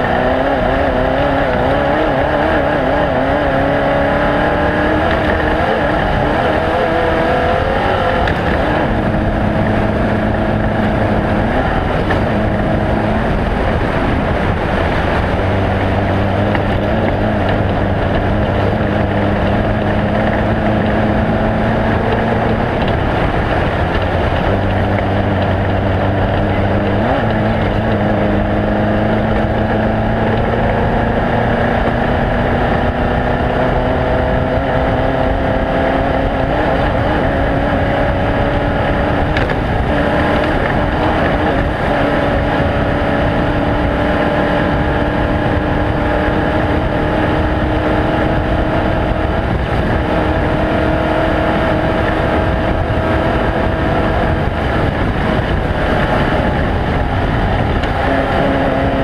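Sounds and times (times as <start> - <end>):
engine-like drone rising in pitch: 0.0 - 59.0.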